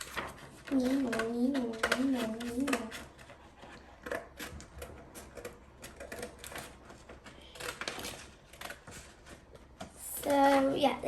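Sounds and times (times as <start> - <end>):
scissors snipping paper: 0.0 - 10.5
paper rustling: 0.0 - 10.8.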